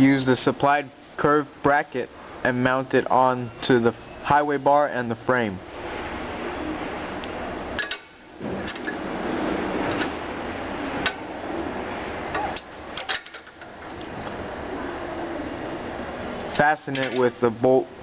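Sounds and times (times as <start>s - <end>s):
steady background hiss: 0.0s - 18.0s.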